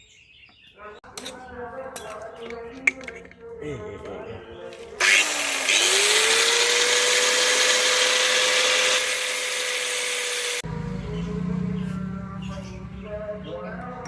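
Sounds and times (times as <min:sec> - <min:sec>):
electric power tool whining: 0:05.0 - 0:10.6.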